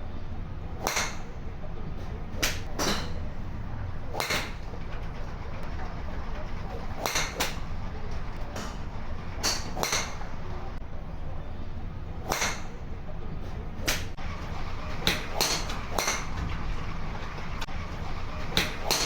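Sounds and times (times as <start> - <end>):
low rumble: 3.1 - 12.2.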